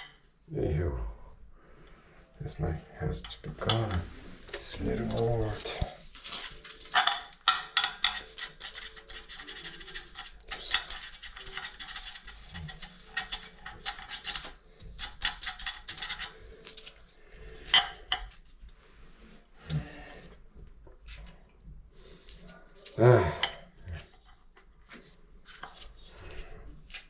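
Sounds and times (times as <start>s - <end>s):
scratchy rubbing and scraping: 3.8s - 20.3s, 24.0s - 27.0s.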